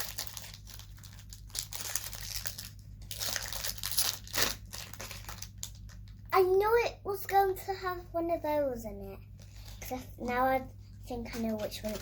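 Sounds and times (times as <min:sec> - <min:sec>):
plastic wrapping crinkling: 0:00.0 - 0:06.3, 0:11.3 - 0:12.0.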